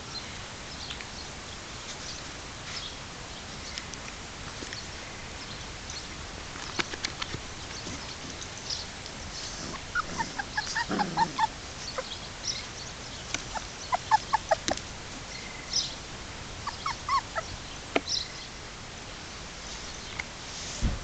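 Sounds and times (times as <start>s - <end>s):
puppies whimpering: 9.4s - 12.8s, 13.4s - 14.8s, 16.6s - 17.6s.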